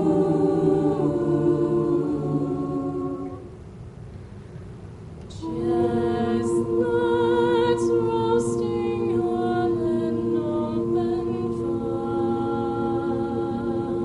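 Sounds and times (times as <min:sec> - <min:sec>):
choir singing a cappella: 0:00.0 - 0:03.6, 0:05.3 - 0:14.0.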